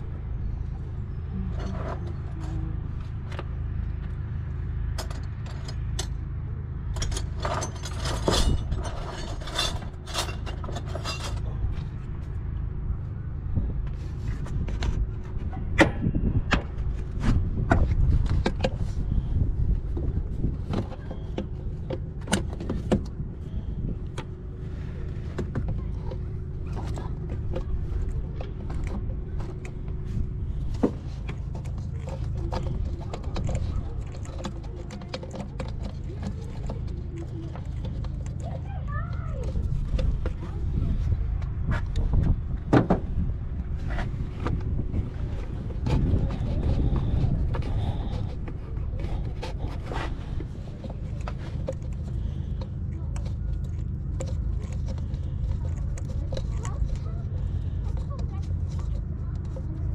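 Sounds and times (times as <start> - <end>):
low rumble: 0.0 - 59.9
metal tools clinking and rattling: 5.0 - 6.2, 6.9 - 12.0.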